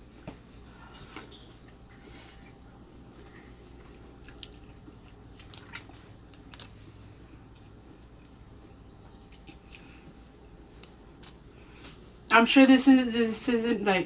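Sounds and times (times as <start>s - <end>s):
person chewing food: 0.0s - 12.0s.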